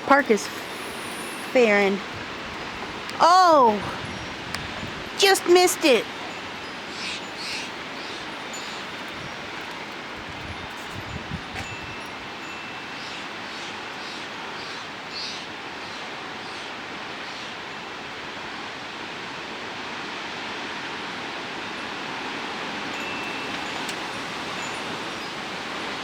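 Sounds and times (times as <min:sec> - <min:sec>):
rustling leaves: 0:00.0 - 0:26.0
storm wind through trees: 0:00.0 - 0:26.0.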